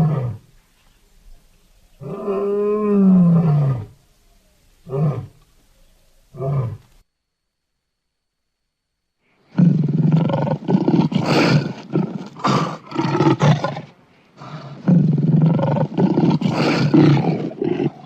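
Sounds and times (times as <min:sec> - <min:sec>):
lion roaring: 0:02.0 - 0:04.0, 0:09.5 - 0:18.0.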